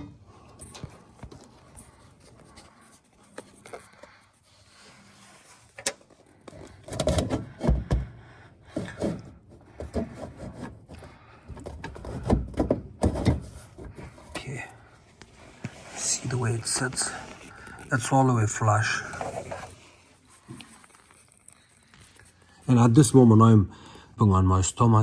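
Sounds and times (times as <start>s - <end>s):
quiet handling: 9.8s - 22.5s.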